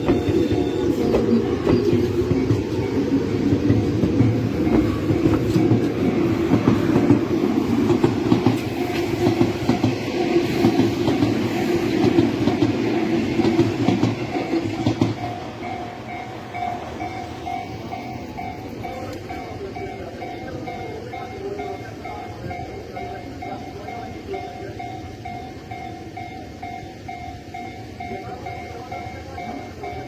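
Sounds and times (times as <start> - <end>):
train wheels clattering: 0.0 - 20.8
crossing warning bell ringing: 0.0 - 30.0.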